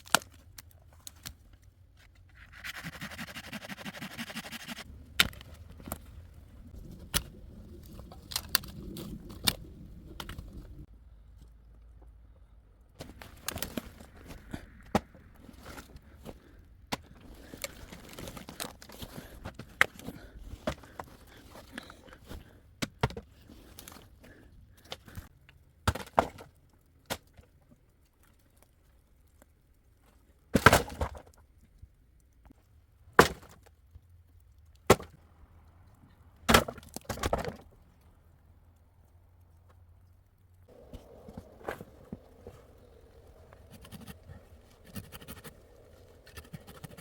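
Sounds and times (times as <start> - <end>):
wood cracking: 0.0 - 1.7, 4.5 - 10.8, 13.0 - 29.5, 32.6 - 38.2, 38.8 - 47.0
crunching and rustling: 4.5 - 11.6, 13.0 - 22.6, 39.0 - 47.0.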